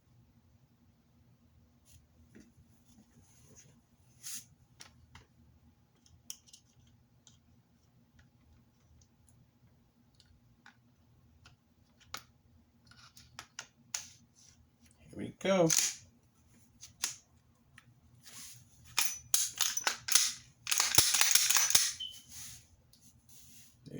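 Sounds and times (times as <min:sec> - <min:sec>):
metallic clicks of pistol parts: 0:15.6 - 0:16.0, 0:18.9 - 0:22.1.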